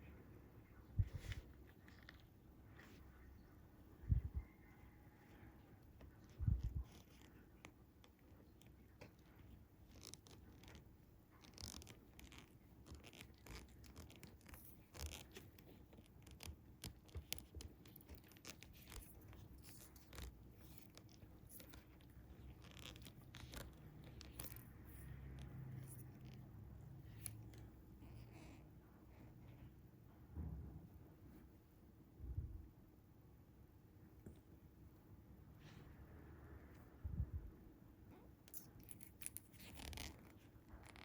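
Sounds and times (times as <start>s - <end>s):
fishing line scratching and clicking: 6.0s - 27.7s, 38.4s - 41.0s.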